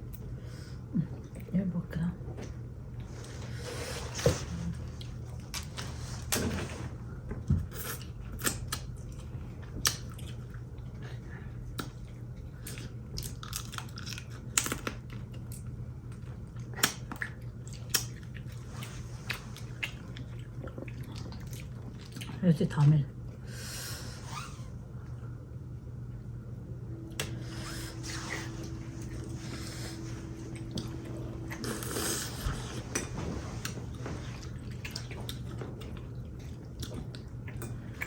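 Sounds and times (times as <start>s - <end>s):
low hum: 0.0s - 38.0s
chewing: 7.6s - 22.4s, 27.2s - 38.0s.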